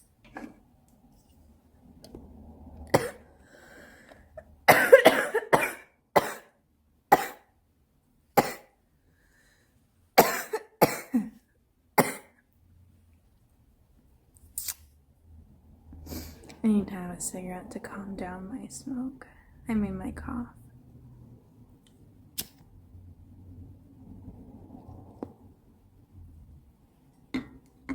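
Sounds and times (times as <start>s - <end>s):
woman coughing: 3.0s - 3.2s, 4.7s - 6.5s, 7.2s - 7.4s, 8.4s - 8.7s, 10.2s - 11.4s, 12.0s - 12.3s
faint breathing: 3.2s - 4.4s, 9.0s - 9.8s, 16.0s - 16.6s, 19.2s - 19.7s.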